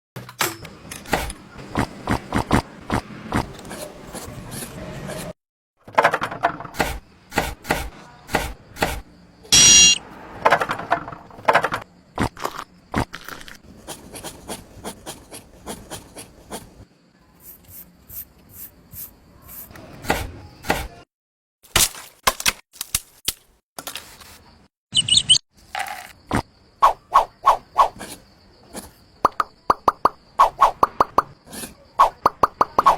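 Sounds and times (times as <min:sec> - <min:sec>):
short high-pitched squeal: 0:09.6 - 0:10.0.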